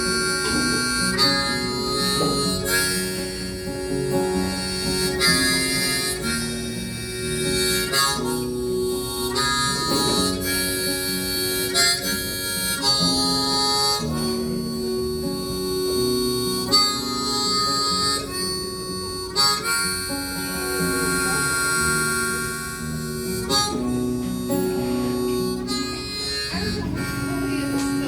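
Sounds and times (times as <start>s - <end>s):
acoustic guitar: 0.0s - 28.0s
harmonica playing held notes: 0.0s - 28.0s.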